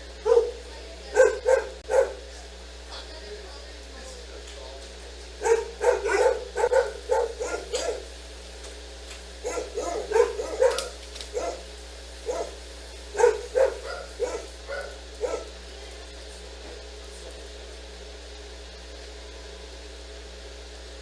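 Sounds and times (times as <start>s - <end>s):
steady low hum: 0.0s - 21.0s
dog barking: 0.2s - 2.3s, 5.4s - 8.1s, 9.4s - 15.6s.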